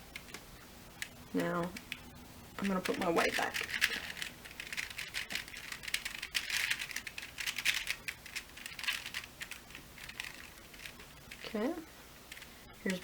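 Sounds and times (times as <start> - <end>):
puzzle cube clicking: 1.0 - 11.6.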